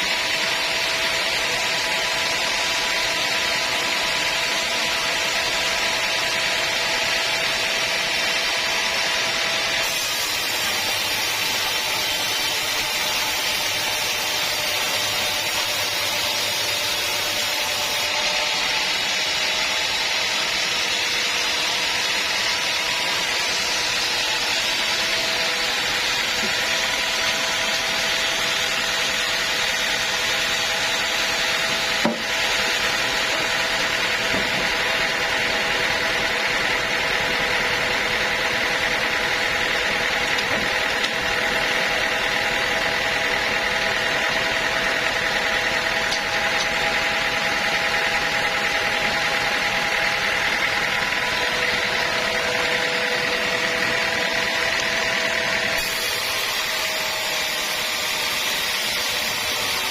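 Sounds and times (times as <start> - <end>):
sawmill saw cutting log: 0.0 - 59.9.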